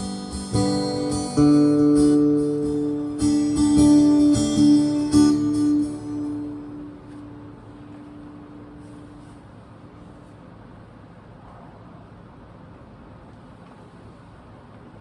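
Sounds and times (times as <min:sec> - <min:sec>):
acoustic guitar strummed chords: 0:00.0 - 0:10.3.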